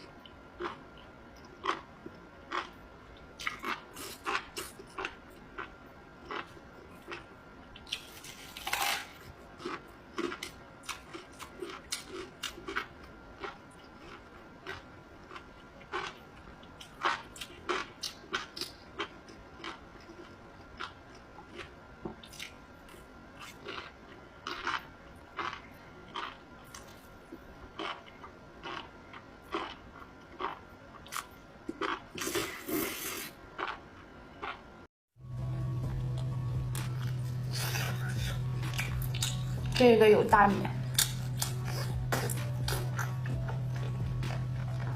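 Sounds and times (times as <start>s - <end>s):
person chewing food: 0.0s - 33.8s, 34.4s - 34.6s, 35.8s - 39.8s, 40.8s - 44.9s
steady low hum: 0.0s - 44.9s.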